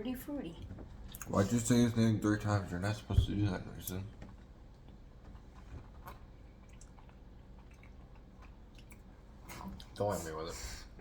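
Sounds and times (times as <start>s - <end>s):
chewing snack food: 4.3s - 10.0s.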